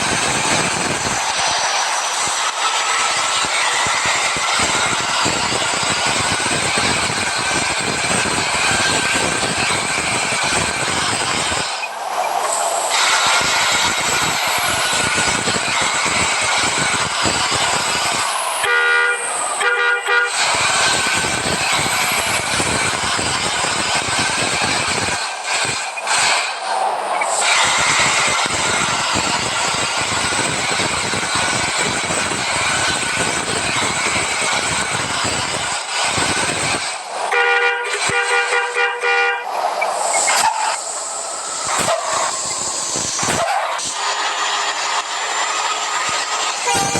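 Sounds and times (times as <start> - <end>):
loud bus engine running: 0.0 - 46.9
multi-tone horn blasts: 18.6 - 20.6, 37.3 - 39.6, 46.6 - 46.9.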